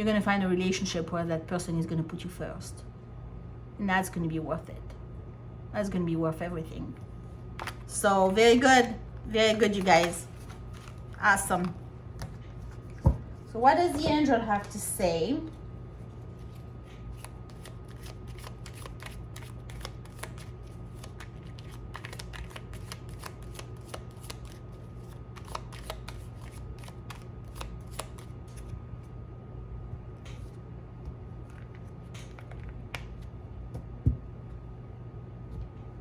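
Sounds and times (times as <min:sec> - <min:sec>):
cards being shuffled by hand: 0:07.6 - 0:14.8, 0:15.5 - 0:29.1, 0:30.2 - 0:33.9.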